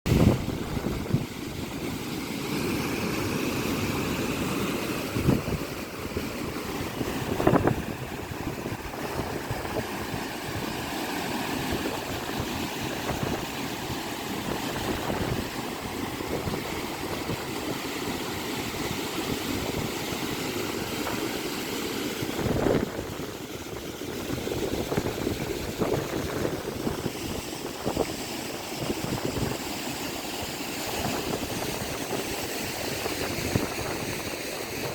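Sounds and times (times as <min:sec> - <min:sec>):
wind: 0:00.0 - 0:34.9
water: 0:00.1 - 0:34.9.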